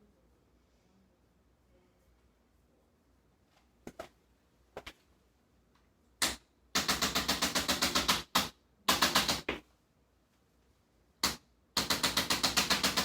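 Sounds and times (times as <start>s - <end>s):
adjusting instrument rapid clicks: 11.2s - 13.0s.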